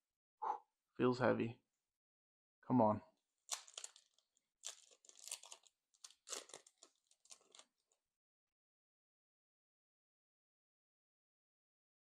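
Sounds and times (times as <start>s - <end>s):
foil wrapper tearing and crinkling: 3.5s - 8.0s.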